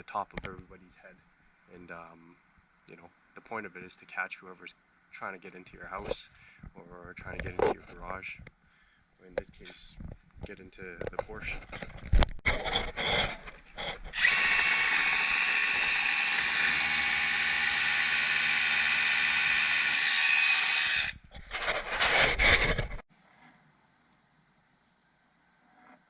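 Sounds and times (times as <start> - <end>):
power drill running: 13.8 - 22.7.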